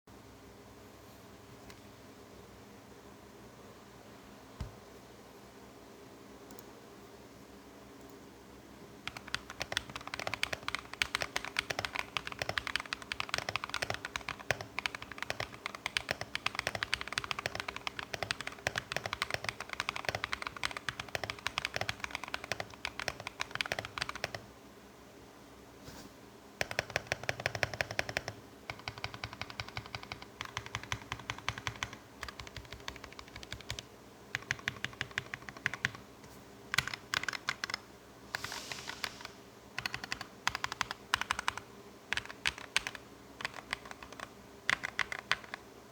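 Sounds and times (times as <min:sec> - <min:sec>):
mechanical keyboard typing: 0:09.0 - 0:24.4, 0:26.6 - 0:36.0, 0:36.7 - 0:45.6.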